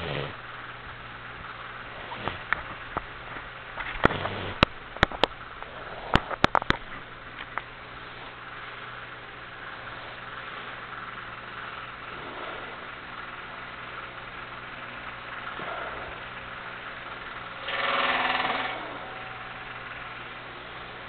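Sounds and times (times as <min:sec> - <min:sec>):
ox low rumbling: 0:00.0 - 0:21.0
ox drawn-out call: 0:15.5 - 0:16.5.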